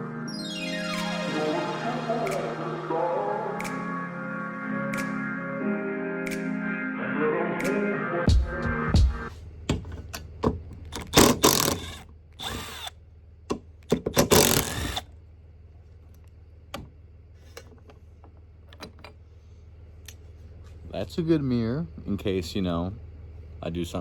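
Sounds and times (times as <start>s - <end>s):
sharp clicks and knocks: 9.7s - 12.6s, 13.5s - 15.0s
drill and ratchet bursts: 10.9s - 12.9s, 13.9s - 15.1s.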